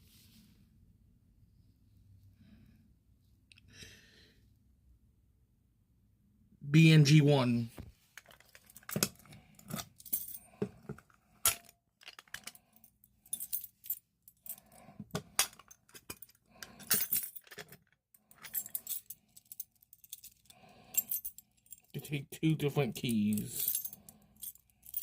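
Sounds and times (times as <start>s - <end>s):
keys jangling and clinking: 8.2s - 21.9s, 23.0s - 25.0s.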